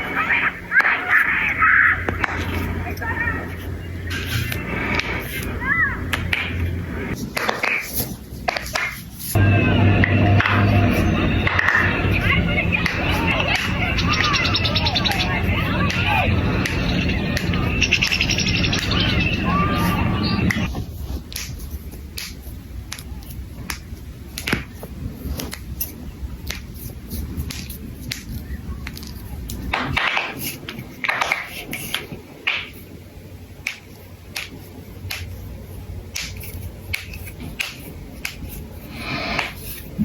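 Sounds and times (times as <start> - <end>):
knuckles cracking: 36.1 - 38.7.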